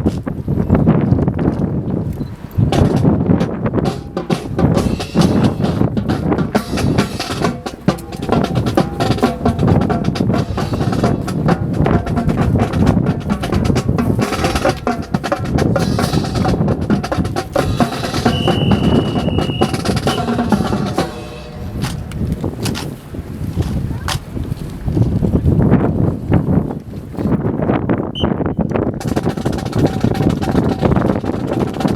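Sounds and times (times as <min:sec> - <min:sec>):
rhythmic drumming: 0:02.7 - 0:22.9, 0:29.0 - 0:31.9
steady high tone: 0:17.6 - 0:22.4
sharp wooden clacks: 0:21.8 - 0:23.0.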